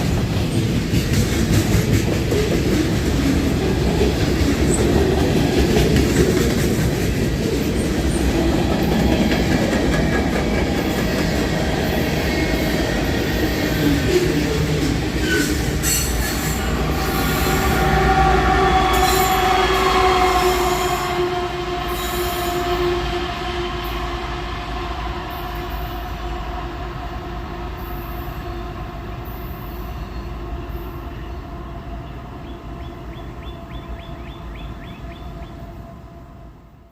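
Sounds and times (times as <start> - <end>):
freight train rolling past: 0.0 - 36.9
train wheels squealing: 10.6 - 21.0, 21.9 - 23.2, 27.8 - 35.7.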